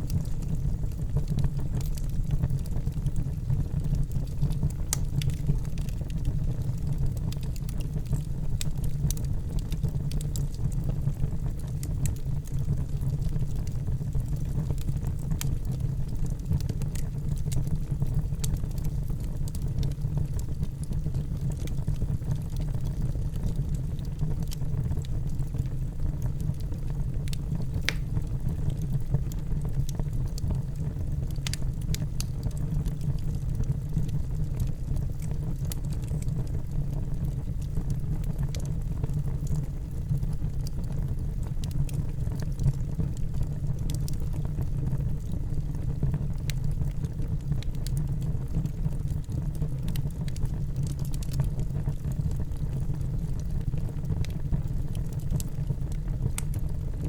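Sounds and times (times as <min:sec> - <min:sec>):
fire crackles and pops: 0:00.0 - 0:57.0
fire flames rumbling: 0:00.0 - 0:57.0.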